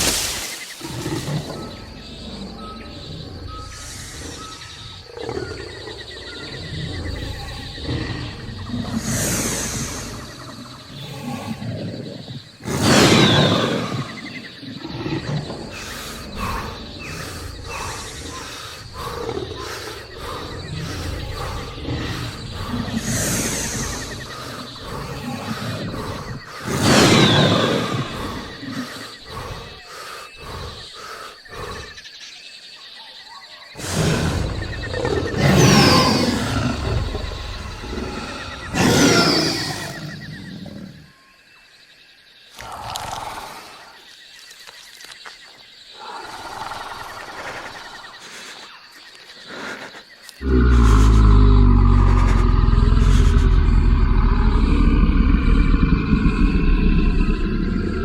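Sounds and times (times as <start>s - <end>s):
jungle insects chirring: 0.0s - 58.0s
large animal roaring: 33.8s - 41.1s, 50.4s - 58.0s
low rumble: 50.5s - 58.0s.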